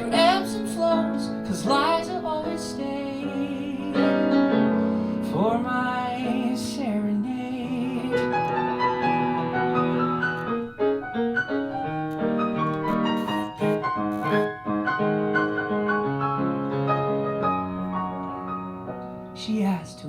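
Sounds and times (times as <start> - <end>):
piano playing: 0.0 - 20.0.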